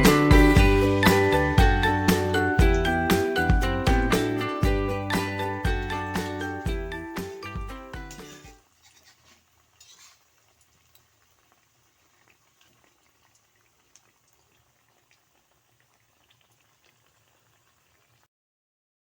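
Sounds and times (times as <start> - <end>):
tiny crackles and ticks: 8.6 - 18.2.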